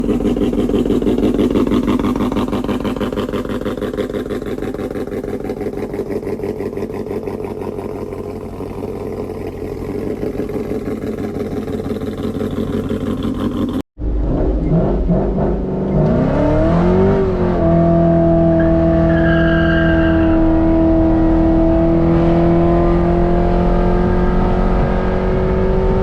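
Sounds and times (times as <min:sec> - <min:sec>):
engine idling with choppy exhaust: 0:00.0 - 0:13.8.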